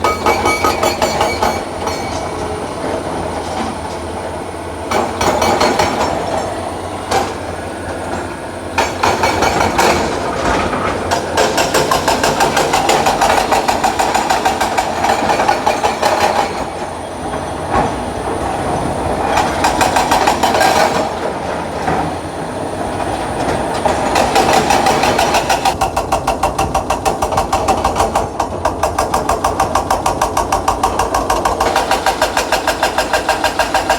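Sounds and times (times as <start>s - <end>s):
sharp metallic knocks: 0.0s - 2.6s, 4.9s - 7.4s, 8.8s - 16.8s.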